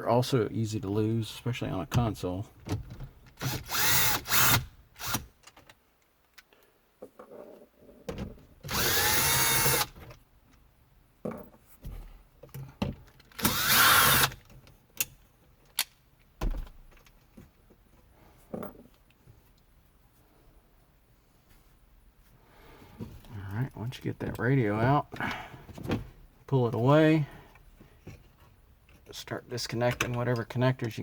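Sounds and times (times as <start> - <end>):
power drill spinning: 3.4 - 5.3, 8.7 - 10.0, 13.3 - 14.4
light clicks and handling knocks: 23.0 - 31.0.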